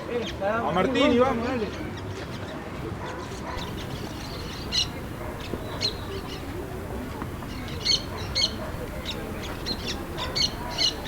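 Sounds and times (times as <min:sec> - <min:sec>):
steady background noise: 0:00.0 - 0:11.0
bird short sharp calls: 0:03.6 - 0:11.0.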